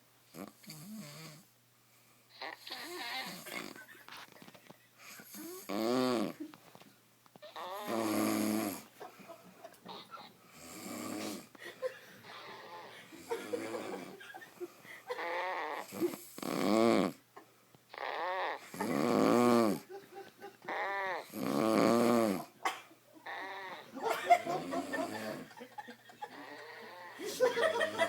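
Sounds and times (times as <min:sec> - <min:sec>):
man snoring loudly: 0:05.3 - 0:06.4, 0:07.6 - 0:08.9, 0:10.6 - 0:11.5, 0:12.6 - 0:14.2, 0:15.2 - 0:17.2, 0:18.0 - 0:19.9, 0:20.7 - 0:22.6, 0:23.3 - 0:25.5.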